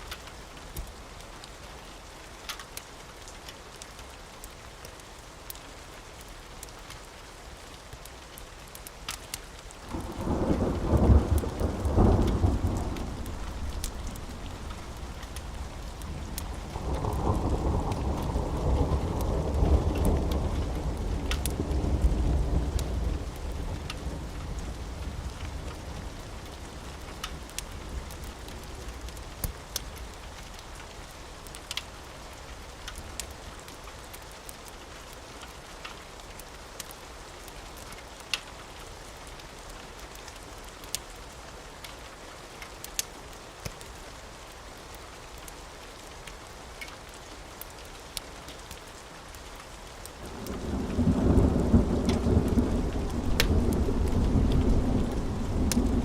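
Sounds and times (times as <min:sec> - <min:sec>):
steady rain: 0:00.0 - 0:56.0
wood fire crackling and popping: 0:08.7 - 0:18.3, 0:19.0 - 0:34.6, 0:35.8 - 0:37.0, 0:42.6 - 0:43.9, 0:47.6 - 0:56.0
low rumble of thunder: 0:09.9 - 0:29.5, 0:50.2 - 0:56.0.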